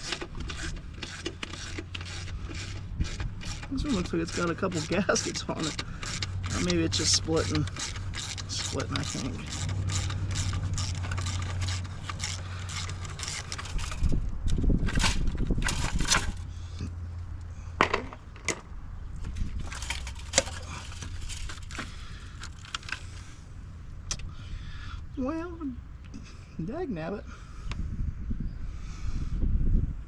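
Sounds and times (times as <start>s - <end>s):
tools scraping and knocking: 0.0s - 16.5s, 17.8s - 23.0s.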